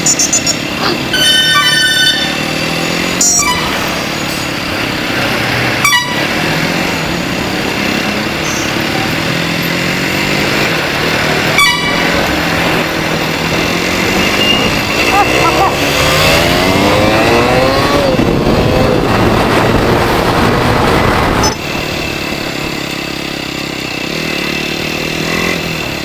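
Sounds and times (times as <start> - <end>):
vehicle horns honking: 0.0 - 4.4, 5.7 - 6.8, 11.2 - 17.5
vehicle engines running: 0.0 - 26.0.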